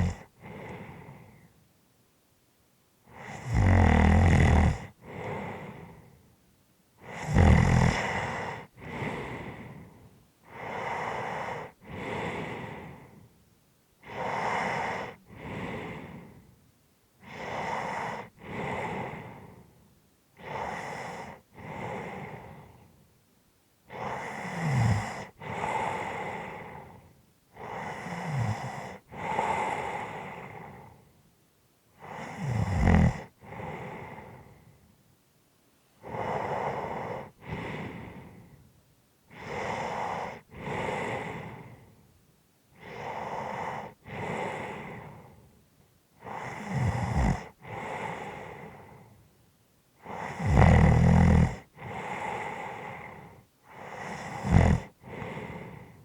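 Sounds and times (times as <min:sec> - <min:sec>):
person snoring: 0:00.0 - 0:01.3, 0:03.1 - 0:06.0, 0:07.0 - 0:13.2, 0:14.0 - 0:16.4, 0:17.2 - 0:19.6, 0:20.4 - 0:22.8, 0:23.9 - 0:27.0, 0:27.6 - 0:31.0, 0:32.0 - 0:34.6, 0:36.0 - 0:38.5, 0:39.3 - 0:41.9, 0:42.8 - 0:45.4, 0:46.2 - 0:49.1, 0:50.0 - 0:56.0
heavy breathing: 0:00.0 - 0:01.6, 0:03.1 - 0:06.3, 0:07.0 - 0:13.4, 0:14.0 - 0:16.6, 0:17.2 - 0:19.8, 0:20.4 - 0:23.0, 0:23.9 - 0:31.1, 0:32.0 - 0:34.9, 0:36.0 - 0:38.7, 0:39.3 - 0:42.1, 0:42.7 - 0:45.6, 0:46.2 - 0:49.3, 0:50.0 - 0:56.0.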